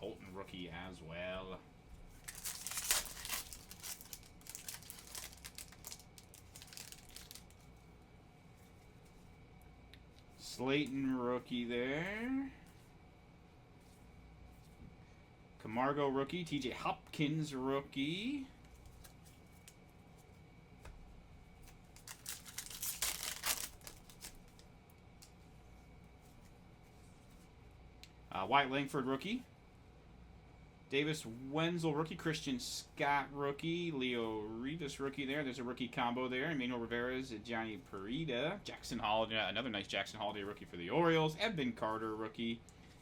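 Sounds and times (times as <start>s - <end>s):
cards flicking and rustling: 2.2s - 7.6s, 21.6s - 24.6s
foil wrapper tearing and crinkling: 2.2s - 7.6s, 21.9s - 24.6s.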